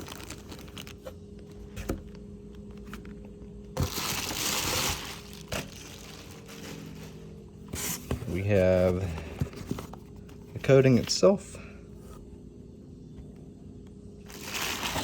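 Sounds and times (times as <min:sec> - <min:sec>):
packaging crinkling: 0:00.0 - 0:02.0, 0:02.8 - 0:07.4, 0:14.3 - 0:15.0
packaging rustling: 0:00.0 - 0:11.2, 0:14.3 - 0:15.0.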